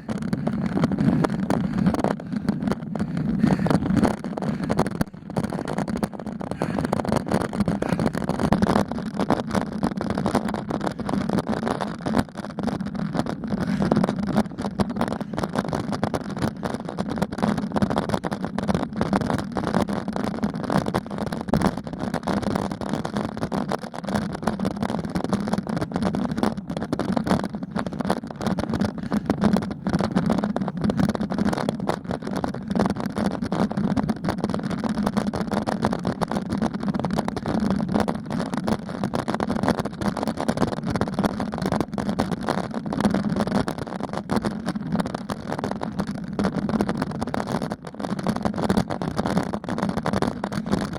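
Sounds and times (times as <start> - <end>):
road vibration rumble: 0.0 - 8.7
wind rumble on microphone: 0.0 - 50.9.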